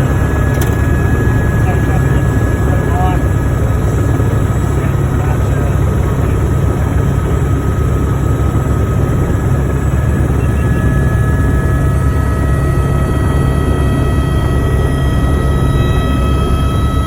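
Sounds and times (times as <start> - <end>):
helicopter rotor drone: 0.0 - 17.0
high whine: 0.0 - 17.0.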